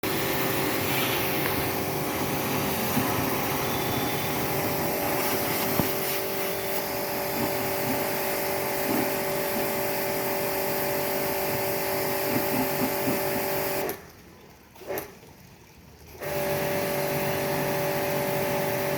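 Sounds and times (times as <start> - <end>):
motor humming with hiss: 0.0 - 14.0.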